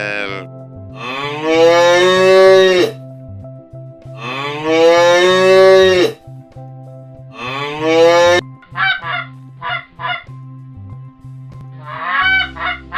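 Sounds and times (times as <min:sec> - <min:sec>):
cow mooing: 0:00.0 - 0:03.0, 0:04.2 - 0:06.2, 0:07.3 - 0:08.4.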